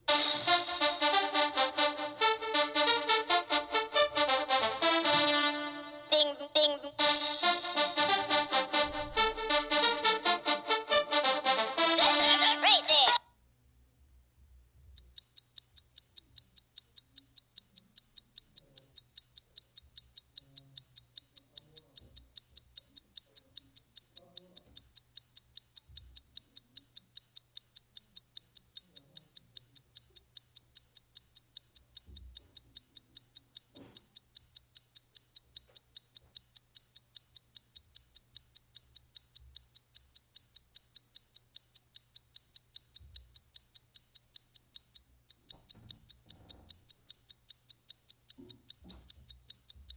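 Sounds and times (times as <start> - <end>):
clock ticking: 0.0 - 13.2, 14.8 - 49.9.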